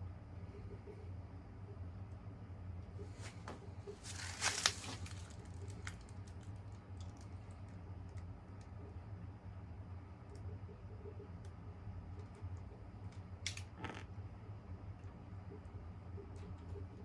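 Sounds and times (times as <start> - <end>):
ceiling fan humming: 0.0 - 17.0
rustling and clicking: 3.2 - 7.3.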